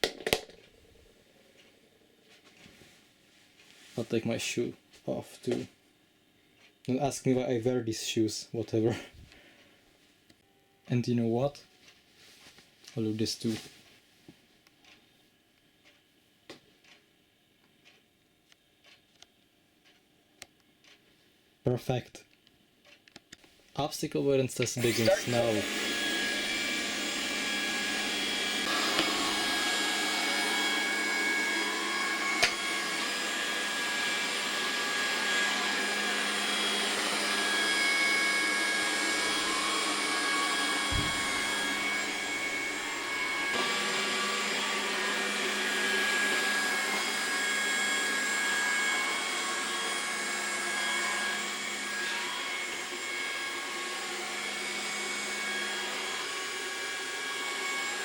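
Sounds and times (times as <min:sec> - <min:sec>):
robot vacuum whining: 0:24.7 - 0:58.0
dull thud: 0:40.9 - 0:41.3.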